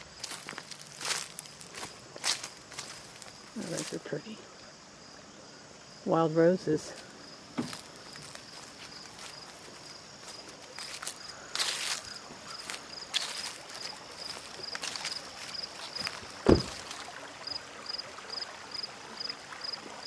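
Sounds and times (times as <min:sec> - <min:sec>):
footsteps on outdoor path: 0:00.0 - 0:04.2, 0:06.9 - 0:17.2
insect chirping: 0:00.0 - 0:20.0
low thump: 0:16.4 - 0:16.9.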